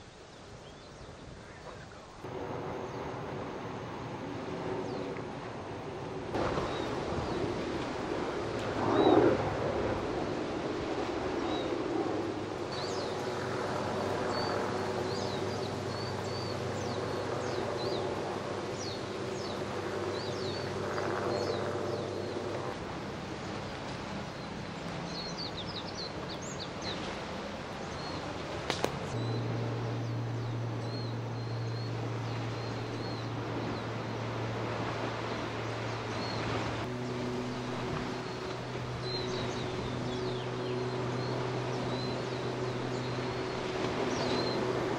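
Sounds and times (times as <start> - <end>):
low mechanical hum: 1.9 - 44.9.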